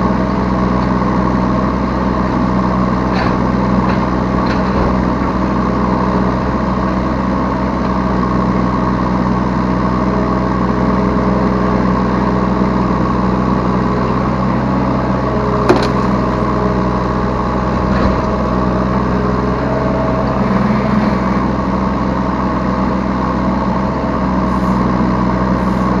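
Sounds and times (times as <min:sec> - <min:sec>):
excavator diesel engine running: 0:00.0 - 0:26.0
sharp knock: 0:15.7 - 0:16.0.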